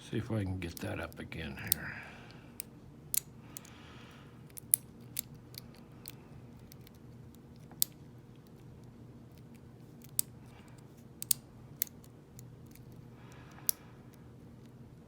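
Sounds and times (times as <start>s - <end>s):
lock pick metallic clicks: 2.6s - 3.8s, 4.5s - 13.8s.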